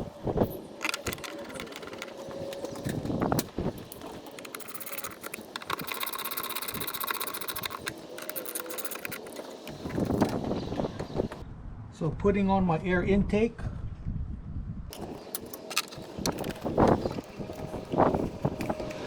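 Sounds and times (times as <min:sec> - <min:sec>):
socket ratchet clicking: 0:00.8 - 0:10.4, 0:14.9 - 0:19.0.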